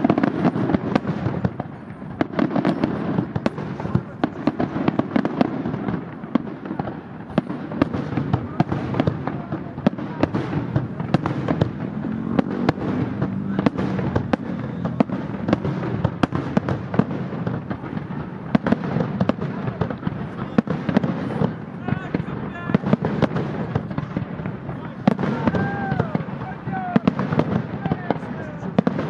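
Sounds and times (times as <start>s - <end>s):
fireworks crackling rumble: 0.0s - 29.0s.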